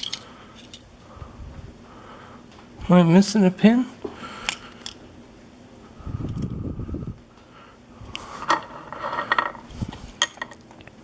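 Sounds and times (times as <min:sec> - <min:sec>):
metal lock parts rattling: 0:00.0 - 0:00.8.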